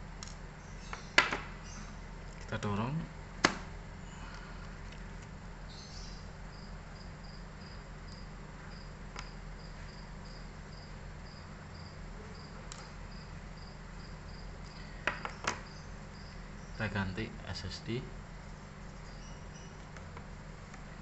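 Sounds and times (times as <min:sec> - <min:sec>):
low steady hum: 0:00.0 - 0:21.0
cricket chirping: 0:05.7 - 0:17.0, 0:19.0 - 0:19.8.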